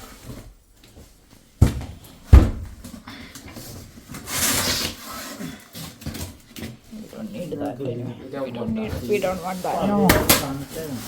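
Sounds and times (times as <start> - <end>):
cardboard rustling scrape: 3.6 - 6.4.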